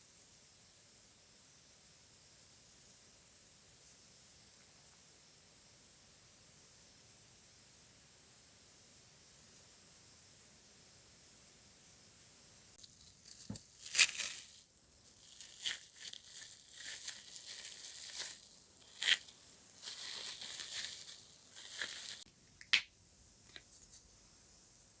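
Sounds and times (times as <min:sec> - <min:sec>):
soft crinkling and rustling: 0:12.8 - 0:22.3.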